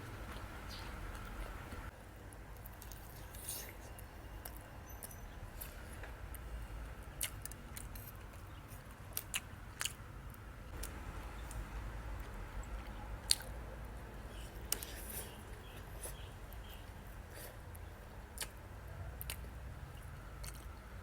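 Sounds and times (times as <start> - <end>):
person chewing: 0.0 - 1.9, 7.2 - 10.0, 10.8 - 11.6, 12.2 - 13.6, 14.4 - 18.6, 19.2 - 20.8.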